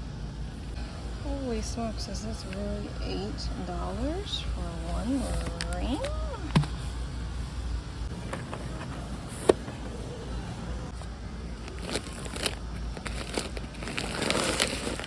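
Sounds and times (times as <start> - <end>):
plastic crinkling: 11.5 - 15.0.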